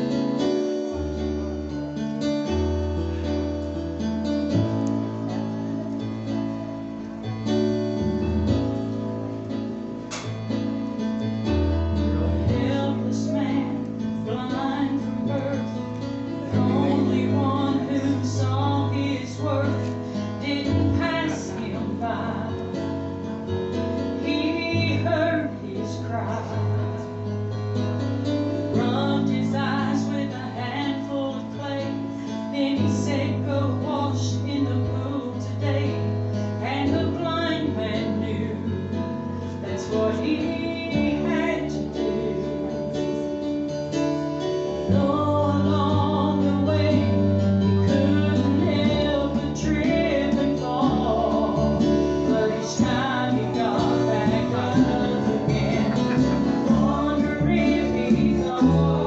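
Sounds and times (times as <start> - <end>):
acoustic guitar: 0.0 - 59.0
woman singing: 12.0 - 23.2, 24.1 - 27.2, 28.7 - 43.3, 44.9 - 59.0
gospel group singing: 16.4 - 18.9, 48.2 - 59.0.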